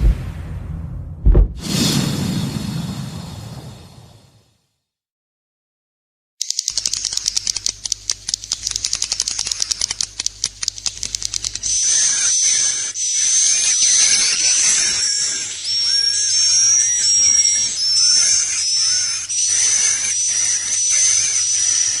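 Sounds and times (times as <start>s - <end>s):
high dry bird clicks: 6.4s - 12.0s.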